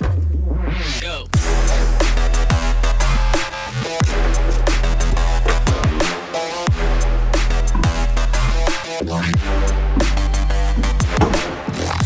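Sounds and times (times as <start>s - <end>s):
heavy bass line: 0.0s - 12.0s
electronic dance music: 0.8s - 12.0s
kick drum beat: 1.3s - 2.8s, 4.0s - 7.1s, 10.7s - 12.0s.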